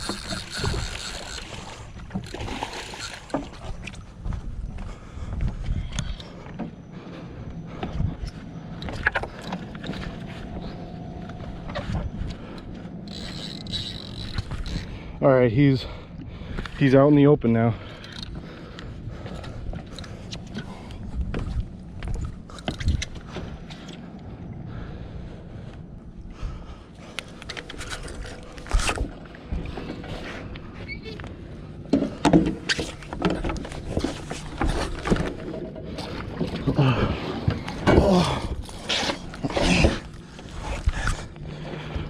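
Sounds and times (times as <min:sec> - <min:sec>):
fishing tackle clicks and knocks: 0:00.0 - 0:04.0, 0:12.5 - 0:14.9, 0:18.0 - 0:18.4, 0:21.3 - 0:23.3
wind rumbling on microphone: 0:00.0 - 0:06.4, 0:18.3 - 0:31.6
faint steady hum: 0:00.0 - 0:42.0.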